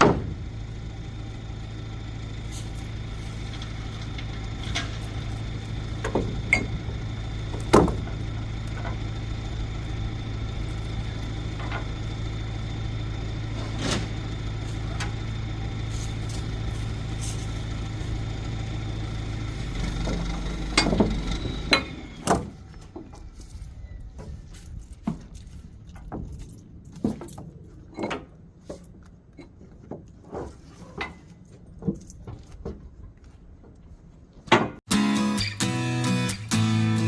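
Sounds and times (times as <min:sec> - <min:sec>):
sharp clanks and knocks: 0:00.0 - 0:00.4, 0:03.3 - 0:05.3, 0:05.9 - 0:09.1, 0:11.5 - 0:12.0, 0:19.6 - 0:34.9
engine idling: 0:00.0 - 0:29.9, 0:31.0 - 0:37.0.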